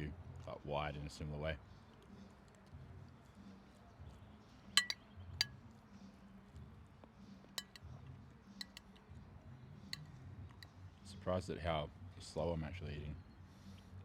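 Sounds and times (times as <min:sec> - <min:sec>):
cutlery clinking against dish: 0:07.6 - 0:07.8, 0:08.6 - 0:08.9.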